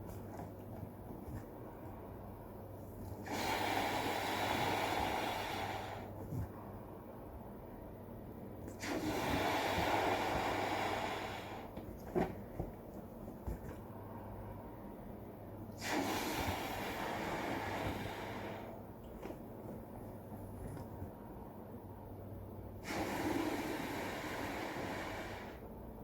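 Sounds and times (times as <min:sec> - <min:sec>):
person blowing into balloon: 0:03.2 - 0:06.1, 0:08.7 - 0:11.7, 0:15.8 - 0:18.7, 0:22.8 - 0:25.6.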